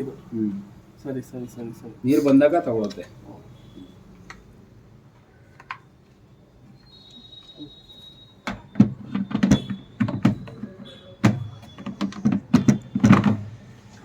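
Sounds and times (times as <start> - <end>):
plastic drawer clattering: 8.8 - 13.6.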